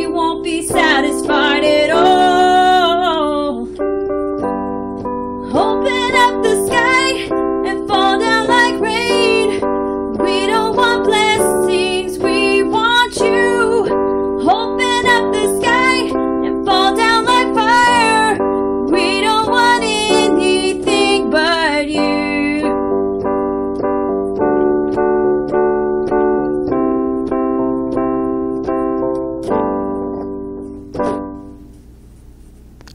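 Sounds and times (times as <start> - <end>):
woman singing: 0.0 - 3.8, 5.4 - 22.8
electric keyboard chords: 0.0 - 32.9.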